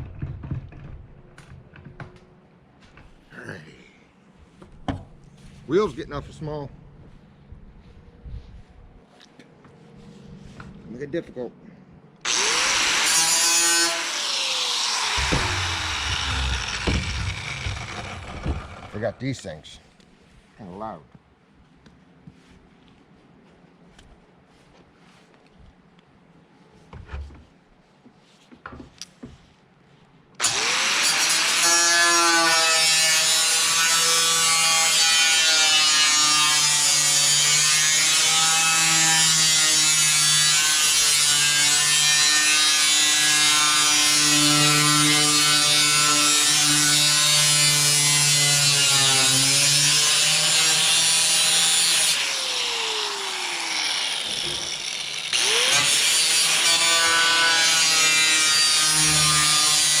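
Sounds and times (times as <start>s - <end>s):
angle grinder cutting metal: 12.2s - 19.2s, 30.4s - 60.0s.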